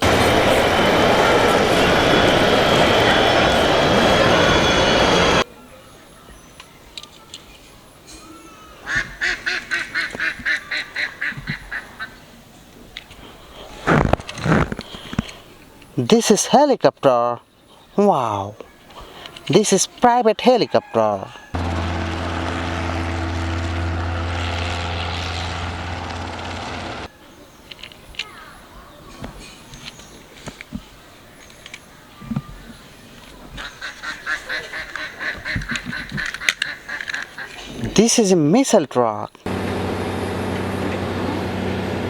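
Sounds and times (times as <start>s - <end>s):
helicopter engine and rotor drone: 0.0s - 5.4s, 39.5s - 42.0s
nasal quack-like calls: 8.9s - 12.2s, 33.6s - 37.7s.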